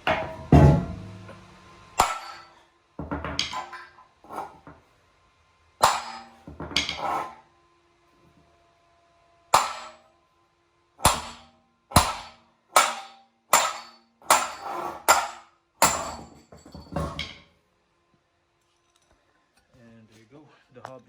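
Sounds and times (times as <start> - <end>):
hammer striking metal: 0.0 - 2.5, 3.2 - 4.6, 5.8 - 7.4, 9.6 - 10.0, 11.0 - 17.5.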